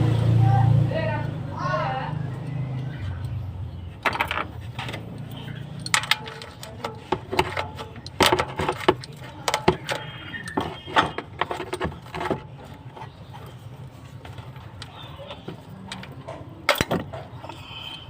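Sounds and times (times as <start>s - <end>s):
metal tools clinking: 4.0s - 17.6s.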